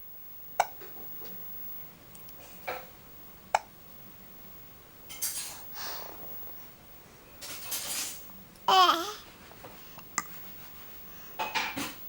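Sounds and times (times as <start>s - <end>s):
baby hiccuping: 8.7s - 9.2s.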